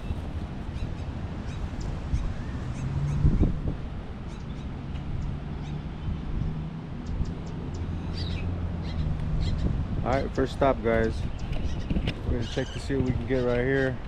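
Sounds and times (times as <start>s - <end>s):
steady low hum: 0.0s - 0.7s
wind rumbling on microphone: 0.0s - 14.0s.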